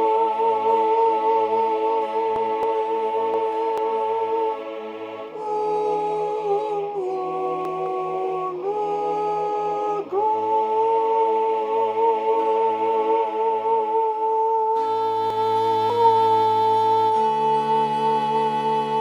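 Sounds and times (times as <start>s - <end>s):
high voice singing wordless notes: 0.0s - 19.0s
soft low sustained accompaniment: 14.8s - 19.0s.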